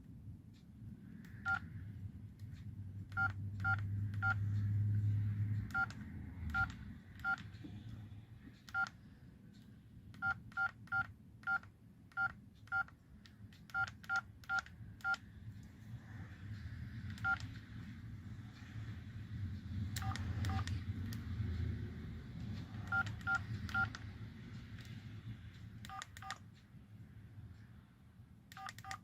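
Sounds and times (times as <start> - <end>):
phone keypad beeps: 1.3 - 1.7, 3.1 - 4.4, 5.7 - 7.5, 8.7 - 8.9, 10.2 - 12.9, 13.7 - 15.2, 17.2 - 17.5, 20.0 - 20.7, 22.9 - 24.0, 25.9 - 26.4, 28.5 - 29.0
low rumble: 13.7 - 26.4.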